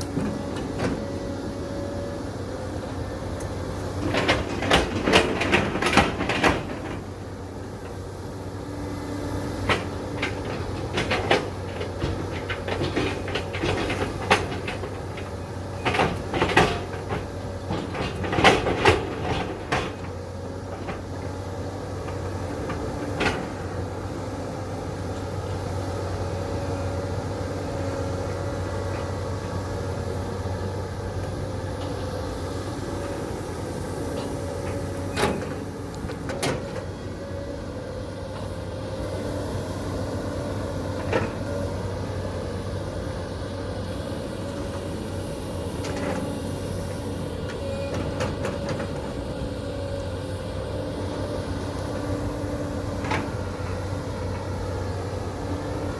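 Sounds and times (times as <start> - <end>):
excavator diesel engine whining: 0.0 - 55.9.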